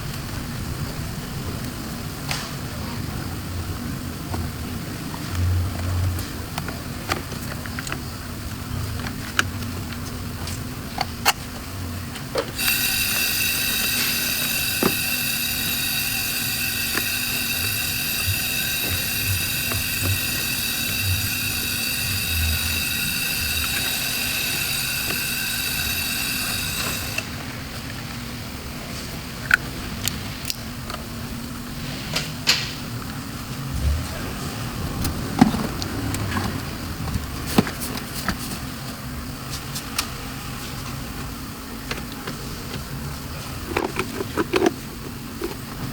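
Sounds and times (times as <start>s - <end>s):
high-pitched mechanical whine: 12.3s - 28.8s.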